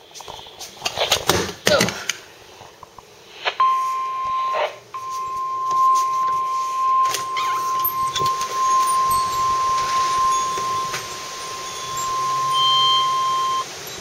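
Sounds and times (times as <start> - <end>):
high-pitched warning alarm beep: 3.6 - 14.0.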